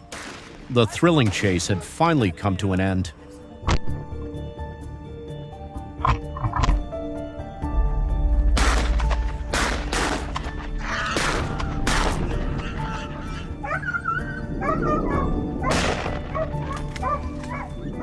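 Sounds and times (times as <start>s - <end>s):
background music: 0.0s - 18.0s
dogs barking: 10.5s - 18.0s
dog yelping and whining: 12.8s - 17.9s.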